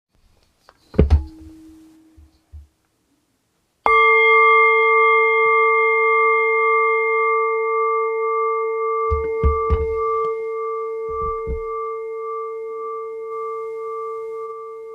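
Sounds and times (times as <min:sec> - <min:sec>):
sharp knocks: 0:00.9 - 0:02.7, 0:09.1 - 0:10.3, 0:11.1 - 0:11.8
bell ringing: 0:09.1 - 0:12.0.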